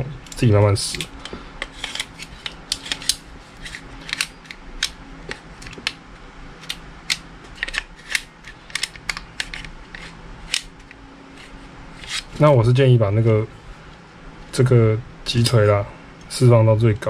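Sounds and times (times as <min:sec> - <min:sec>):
small clicks and taps of pistol parts: 0:06.6 - 0:11.0.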